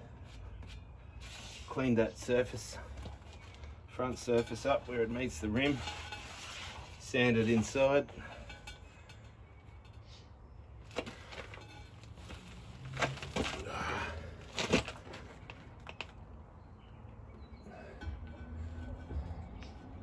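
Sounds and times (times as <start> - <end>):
metal scraping rub: 4.1 - 9.2.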